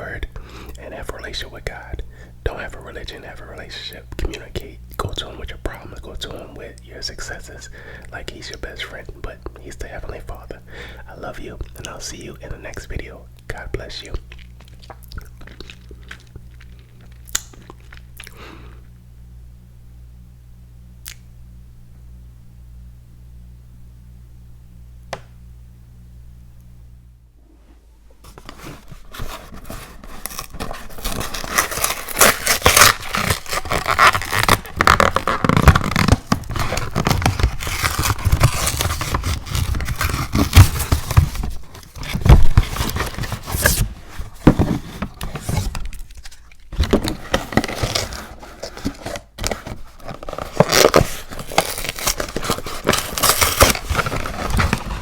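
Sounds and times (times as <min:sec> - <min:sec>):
faint low hum: 0:00.0 - 0:55.0
snack packaging crinkling: 0:11.4 - 0:18.5, 0:28.3 - 0:55.0
eating crunching: 0:14.2 - 0:18.4.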